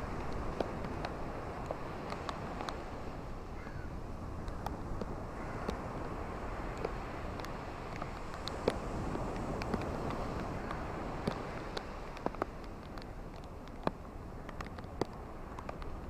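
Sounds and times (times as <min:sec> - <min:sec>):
surf wash: 0:00.0 - 0:16.0
single raindrop ticks: 0:00.2 - 0:02.8, 0:06.7 - 0:16.0.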